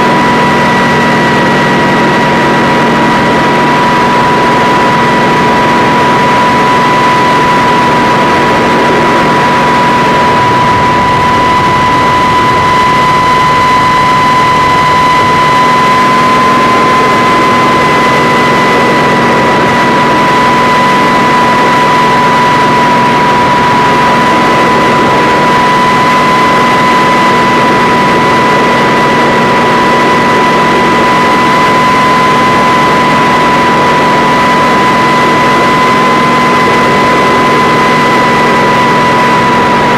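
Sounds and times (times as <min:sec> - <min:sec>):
helicopter engines and rotors: 0:00.0 - 0:39.9
high whine: 0:00.0 - 0:39.9.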